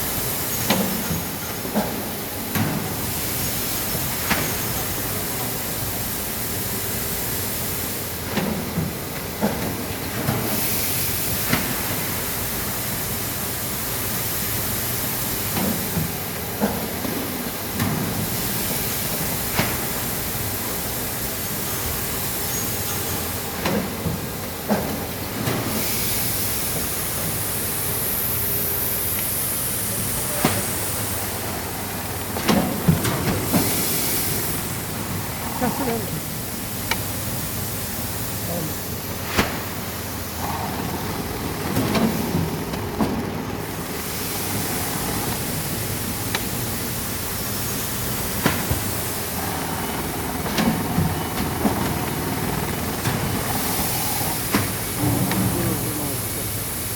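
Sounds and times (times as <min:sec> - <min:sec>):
machine hiss: 0:25.0 - 0:42.8, 0:43.6 - 0:56.9.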